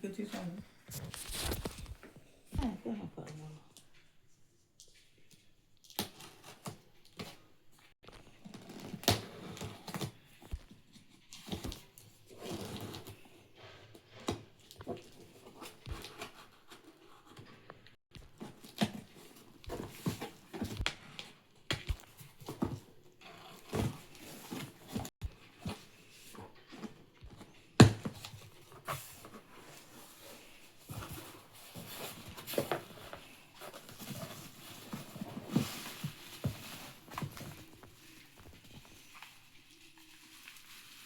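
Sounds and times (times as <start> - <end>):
packaging rustling and tearing: 0.9 - 2.0.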